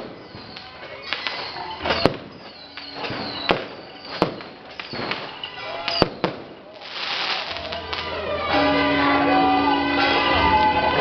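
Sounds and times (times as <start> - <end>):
firecracker crackling: 0.0 - 8.9
firecrackers banging: 0.0 - 11.0.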